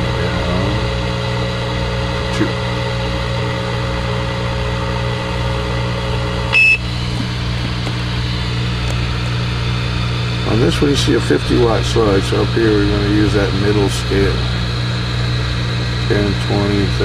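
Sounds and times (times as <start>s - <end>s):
radio electrical hum and hiss: 0.0s - 17.0s
short high electronic beep: 6.5s - 6.8s
held electronic tone: 6.5s - 7.0s.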